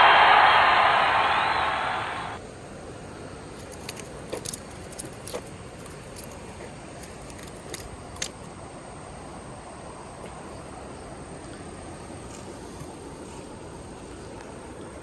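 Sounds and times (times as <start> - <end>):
outdoor background hiss: 0.0 - 15.0
light sharp clicks and clinks: 3.6 - 8.5.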